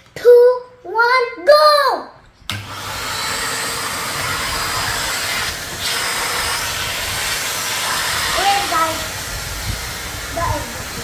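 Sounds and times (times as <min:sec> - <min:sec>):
vacuum cleaner running: 0:02.5 - 0:11.0.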